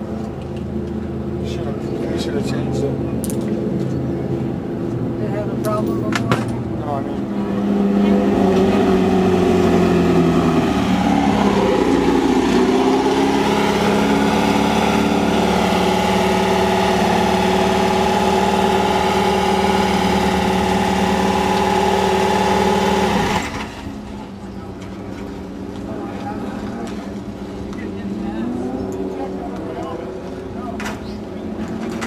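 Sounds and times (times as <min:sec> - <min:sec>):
race buggy engine running: 0:05.2 - 0:32.0.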